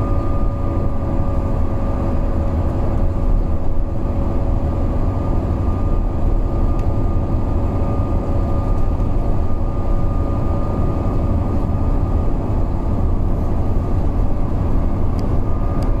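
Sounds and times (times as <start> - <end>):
bus engine drone: 0.0 - 16.0
high whine: 0.0 - 16.0.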